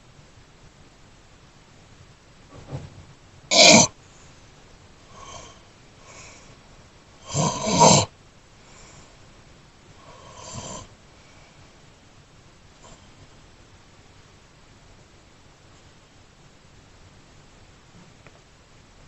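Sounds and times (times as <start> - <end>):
person snoring: 3.5 - 3.9, 5.1 - 5.6, 7.2 - 8.1, 10.0 - 10.9.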